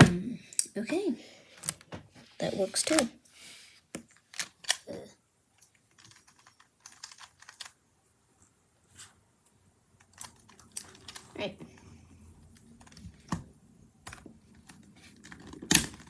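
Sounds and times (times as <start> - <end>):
plastic puzzle cube clicking: 1.6 - 1.9, 2.5 - 3.1, 3.9 - 4.9, 5.6 - 7.8, 10.0 - 11.3.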